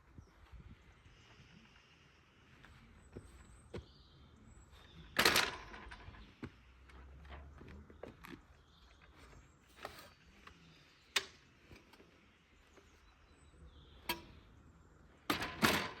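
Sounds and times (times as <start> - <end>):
clattering: 5.1 - 6.3.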